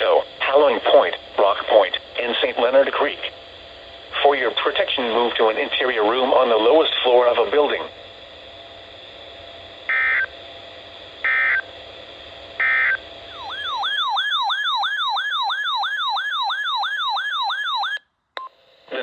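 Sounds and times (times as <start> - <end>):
warbling electronic alert tone: 12.6 - 18.0.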